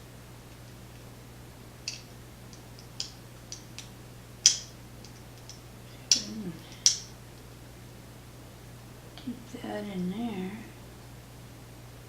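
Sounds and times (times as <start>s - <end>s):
metal tools clicking on padlock: 1.9s - 7.1s.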